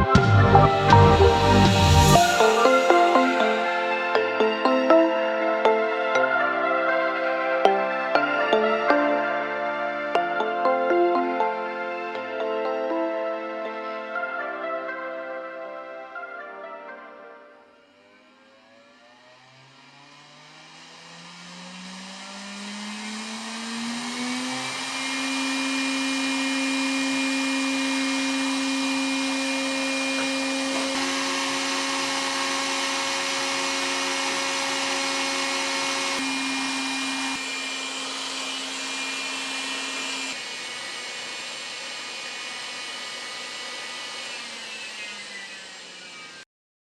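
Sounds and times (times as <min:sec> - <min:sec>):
turbocharger whine: 0:00.0 - 0:06.7, 0:17.6 - 0:46.5.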